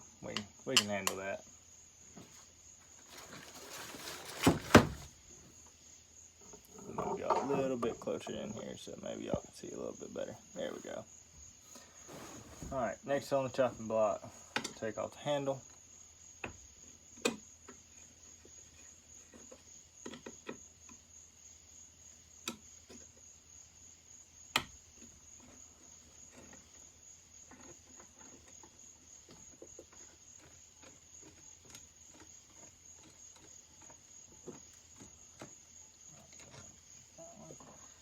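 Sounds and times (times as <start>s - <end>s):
crickets chirping: 0.0s - 38.0s
hand tools clicking and tapping: 0.3s - 1.2s.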